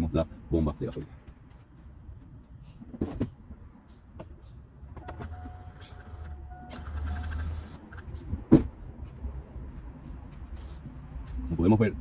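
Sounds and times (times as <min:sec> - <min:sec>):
fuel pump humming and whining: 0:05.0 - 0:07.8.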